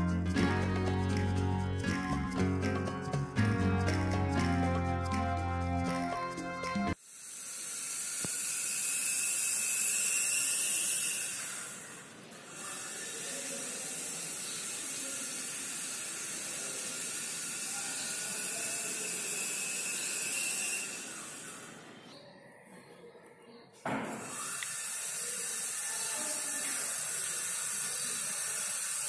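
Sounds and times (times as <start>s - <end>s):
high motor whine: 6.9s - 22.0s
toy helicopter rotors whooshing: 6.9s - 22.0s, 24.2s - 29.0s.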